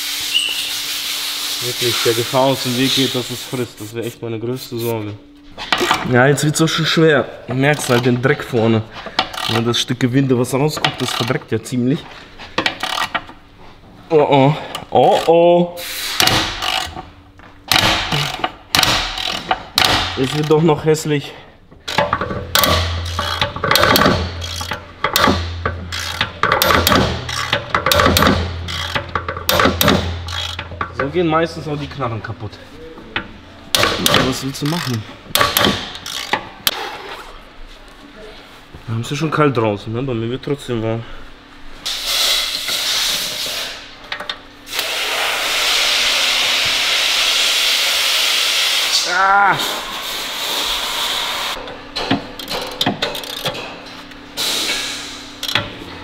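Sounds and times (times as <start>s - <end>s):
steady low hum: 1.6s - 47.7s
hand ratchet clicking: 9.2s - 9.8s, 10.8s - 11.4s, 12.6s - 13.3s, 16.2s - 17.0s, 17.7s - 20.6s, 21.8s - 31.1s, 33.7s - 36.8s, 52.4s - 53.6s, 55.4s - 55.7s
pressurised jet hissing: 15.8s - 16.3s.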